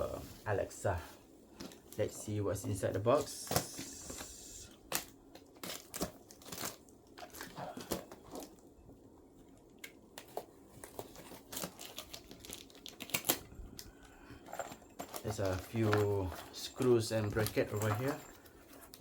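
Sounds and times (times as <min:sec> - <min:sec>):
packaging crinkling and rustling: 0:01.5 - 0:19.0.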